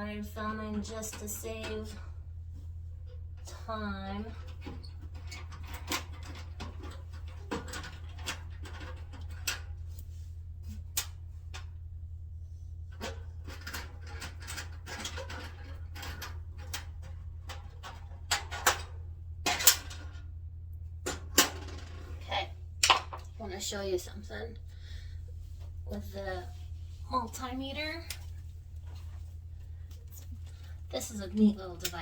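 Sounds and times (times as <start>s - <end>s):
steady low hum: 0.0s - 32.0s
clicks and scrapes of handling screws: 12.9s - 18.9s.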